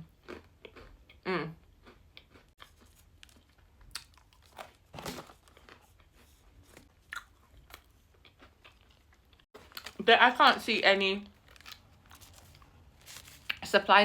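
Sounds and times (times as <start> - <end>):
biscuits being chewed: 0.0 - 10.0, 11.2 - 13.6
packet crinkling: 2.6 - 6.9, 9.6 - 13.8.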